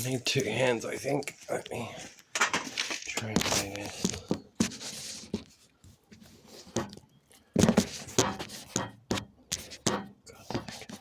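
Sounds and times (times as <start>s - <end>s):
plastic filter clicking and rustling: 2.2s - 5.6s.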